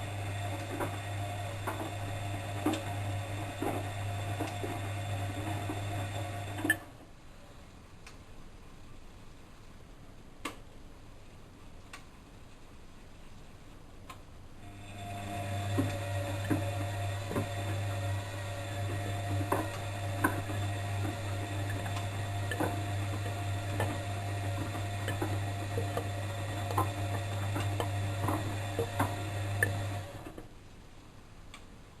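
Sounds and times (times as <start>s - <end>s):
washing machine motor humming: 0.0s - 7.0s, 14.6s - 30.5s.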